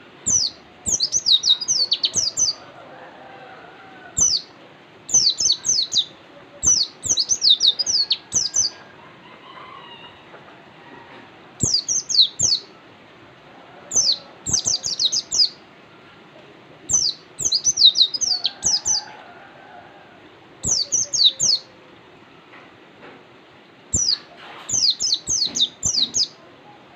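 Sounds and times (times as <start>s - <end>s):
bird singing high chirps: 0.3s - 2.6s, 4.2s - 4.5s, 5.1s - 8.8s, 11.6s - 12.7s, 14.0s - 15.6s, 16.9s - 19.1s, 20.6s - 21.7s, 23.9s - 26.4s.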